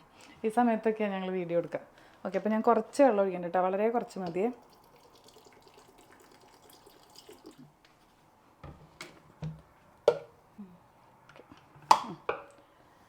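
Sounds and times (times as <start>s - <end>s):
water dripping: 4.1s - 7.7s.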